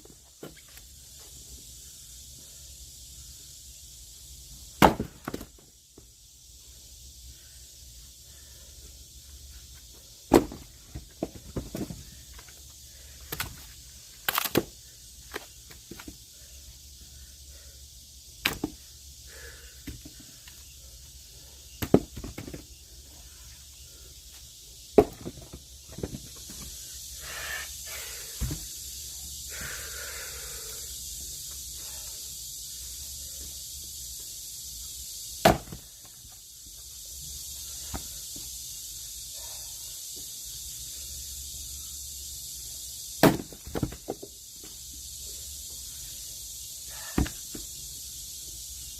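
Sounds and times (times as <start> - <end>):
steady hiss: 0.0 - 48.9
axe striking wood: 4.8 - 5.5, 10.3 - 10.6, 18.4 - 18.8, 25.0 - 26.1, 35.4 - 35.8, 43.2 - 44.0, 47.1 - 47.4.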